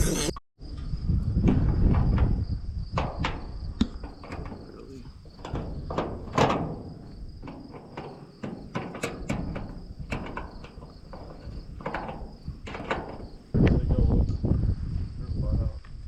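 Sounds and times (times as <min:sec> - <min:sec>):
crickets chirping: 0:00.6 - 0:16.0
knocks and rustles: 0:01.3 - 0:13.9.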